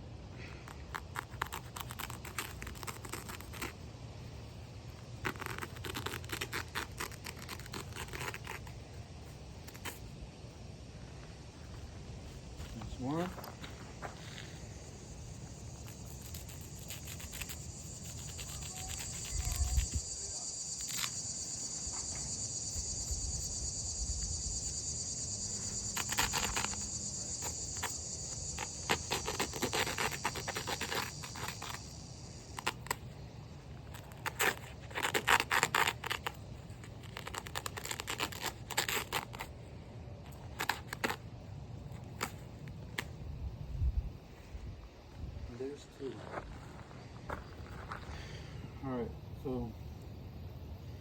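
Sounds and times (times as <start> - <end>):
insects trilling: 0.0 - 51.0
knife cutting through turf: 0.4 - 3.9, 4.9 - 10.2, 15.6 - 24.6, 25.3 - 33.0.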